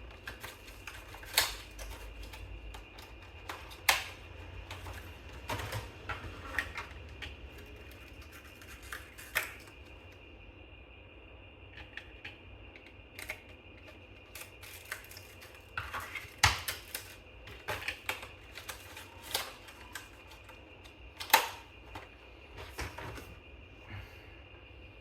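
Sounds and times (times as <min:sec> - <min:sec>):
faint high hum: 0:00.0 - 0:25.0.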